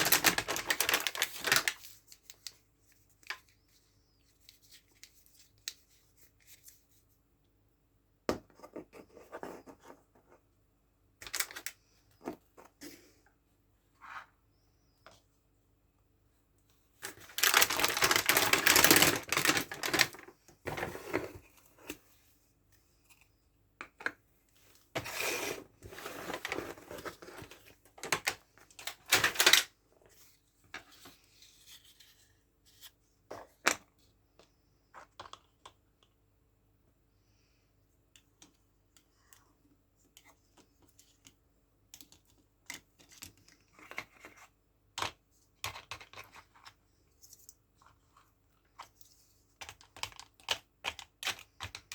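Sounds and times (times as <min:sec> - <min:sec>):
plastic and paper tearing: 0:00.0 - 0:01.8, 0:17.3 - 0:20.2.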